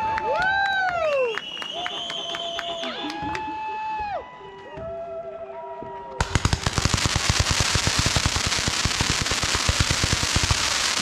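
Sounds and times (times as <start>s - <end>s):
whistling tones: 0.7s - 3.5s
fireworks crackling and banging: 6.2s - 11.0s.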